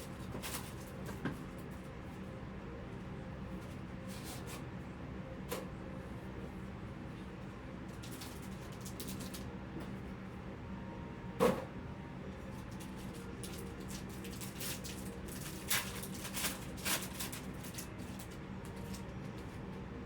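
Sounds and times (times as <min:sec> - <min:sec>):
clicks and rustles of packs: 0:08.0 - 0:09.5, 0:12.6 - 0:19.5.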